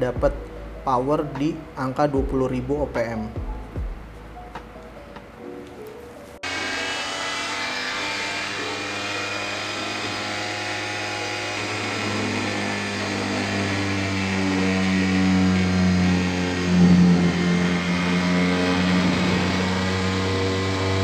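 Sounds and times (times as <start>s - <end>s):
oscillating multi-tool buzzing: 6.4s - 21.0s.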